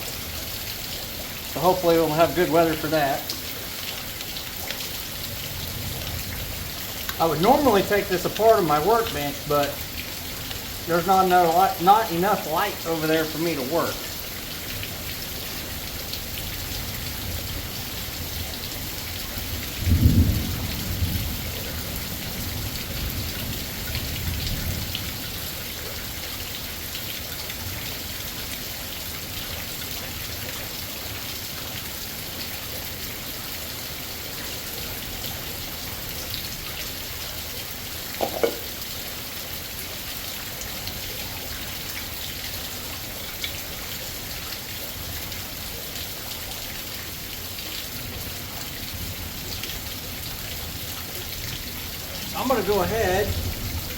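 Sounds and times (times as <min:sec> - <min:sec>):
heavy rain: 0:00.0 - 0:53.9
thunder rumbling: 0:19.8 - 0:23.3
short knock: 0:38.2 - 0:38.6.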